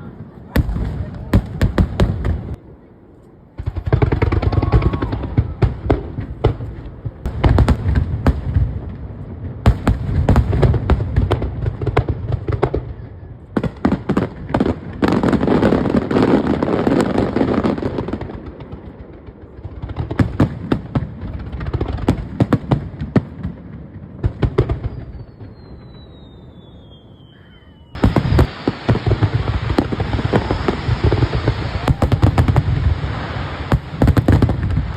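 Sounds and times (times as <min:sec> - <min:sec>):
fireworks crackling: 0:00.0 - 0:02.6, 0:03.3 - 0:27.2, 0:28.0 - 0:34.9
firework shells bursting: 0:28.0 - 0:34.9.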